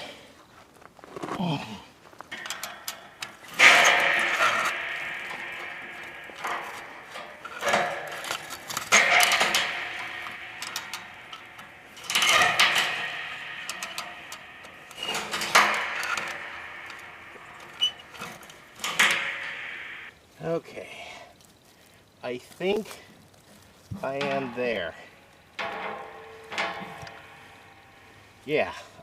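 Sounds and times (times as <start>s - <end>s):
metal tank clanking and scraping: 2.3s - 20.1s, 24.0s - 29.0s.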